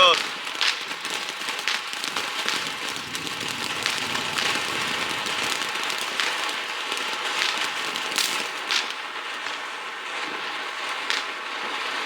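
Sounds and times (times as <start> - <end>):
firework fountain hissing and crackling: 0.0 - 12.0
firework pops: 0.0 - 12.0.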